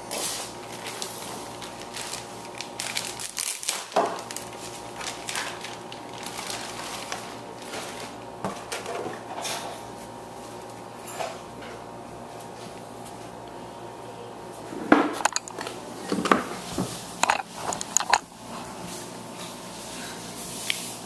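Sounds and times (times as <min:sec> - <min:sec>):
packaging rustling: 0:00.8 - 0:08.2
plastic toy parts clicking: 0:17.2 - 0:18.2.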